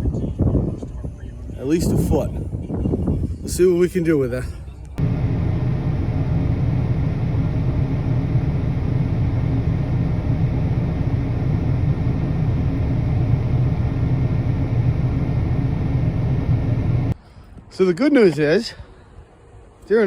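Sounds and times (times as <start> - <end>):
snowplow engine rumbling: 5.0 - 17.2.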